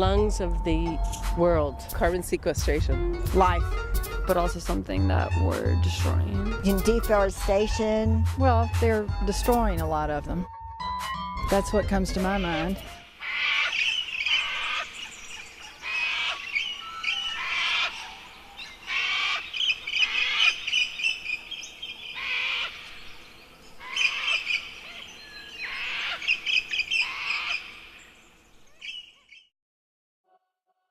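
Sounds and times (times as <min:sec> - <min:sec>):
birds chirping and squawking: 0:11.6 - 0:29.5.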